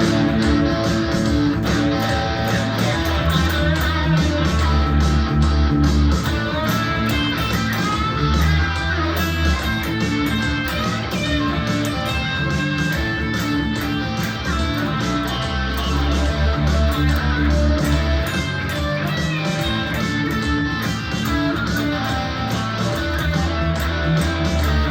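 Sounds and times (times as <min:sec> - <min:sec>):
low bass line: 0:00.0 - 0:24.9
plucked and strummed guitar: 0:00.0 - 0:24.9
steady beat: 0:00.0 - 0:24.9.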